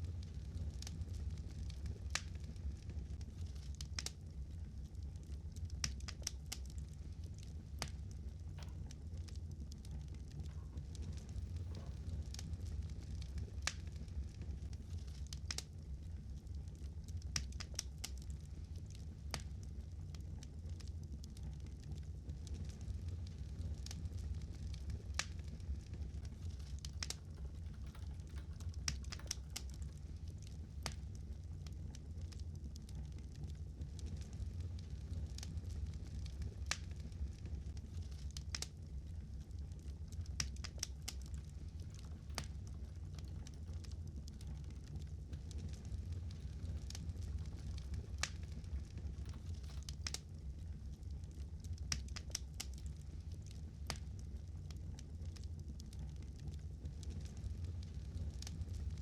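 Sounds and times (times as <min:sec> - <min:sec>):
fire crackling and popping: 0:00.0 - 0:59.0
low rumble: 0:06.8 - 0:17.0, 0:21.6 - 0:38.3, 0:38.9 - 0:52.1, 0:56.1 - 0:59.0.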